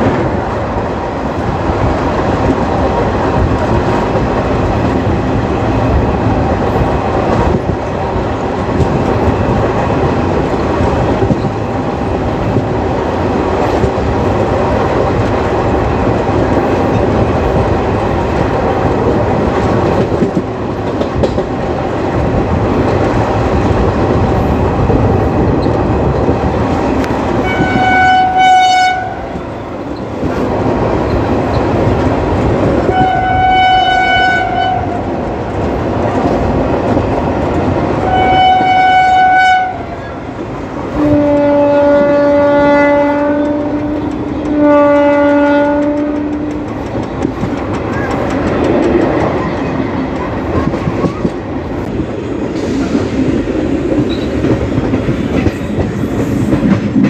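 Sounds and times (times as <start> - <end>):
train wheels rumbling on rails: 0.0 - 57.0
locomotive horn: 27.4 - 29.9, 32.8 - 35.1, 38.0 - 40.2, 40.9 - 46.7.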